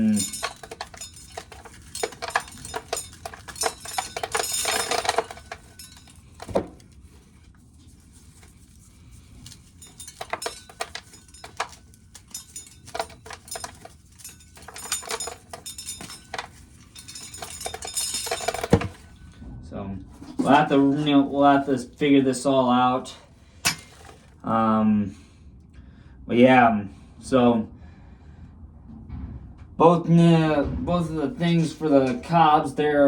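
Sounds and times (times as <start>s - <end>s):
corn kernels clicking and rattling: 0.0s - 7.2s, 8.1s - 19.2s.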